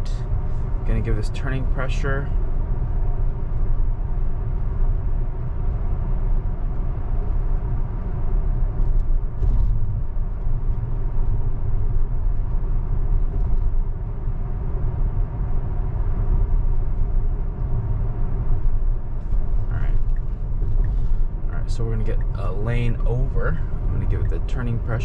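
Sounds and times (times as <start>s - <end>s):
road and tyre rumble: 0.0s - 25.0s.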